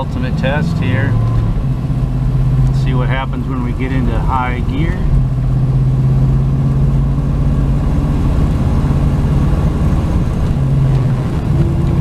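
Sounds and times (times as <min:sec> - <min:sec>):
car engine pulling steadily: 0:00.0 - 0:12.0.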